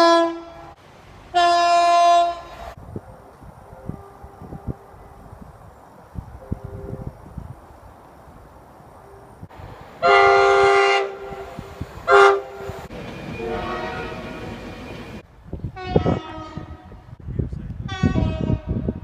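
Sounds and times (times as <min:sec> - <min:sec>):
train horn blasts: 0:00.0 - 0:02.8, 0:03.6 - 0:05.5, 0:06.3 - 0:07.2, 0:10.0 - 0:12.8, 0:13.4 - 0:14.6, 0:15.7 - 0:17.1, 0:17.9 - 0:18.8.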